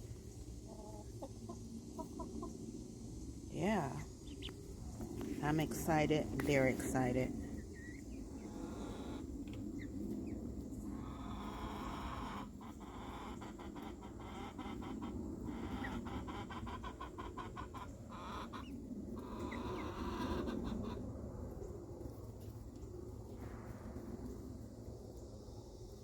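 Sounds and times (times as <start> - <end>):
hens clucking: 0.4 - 2.9, 3.6 - 21.2.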